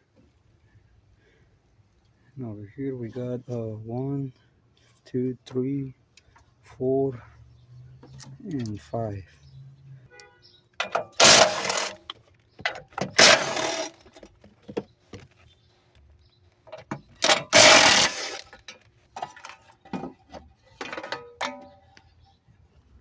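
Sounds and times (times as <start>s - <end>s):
tool handling clicks and knocks: 10.7s - 22.2s
power tool bursts: 11.0s - 12.0s, 13.0s - 14.0s, 17.2s - 18.6s.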